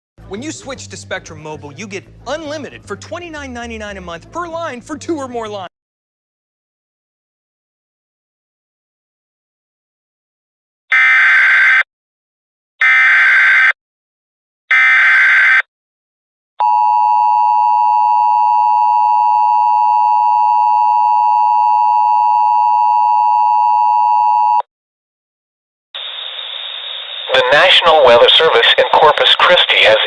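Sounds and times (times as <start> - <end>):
warbling digital data bursts: 26.0 - 28.4.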